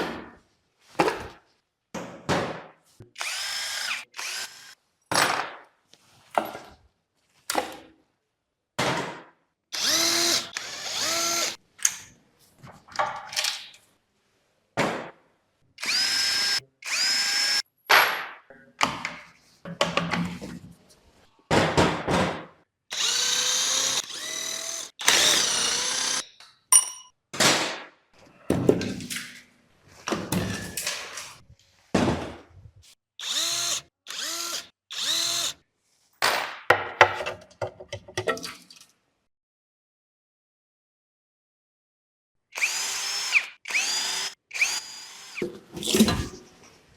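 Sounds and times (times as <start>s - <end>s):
cordless power driver bursts: 9.8s - 11.6s, 22.9s - 26.2s, 33.2s - 35.6s, 42.6s - 45.4s.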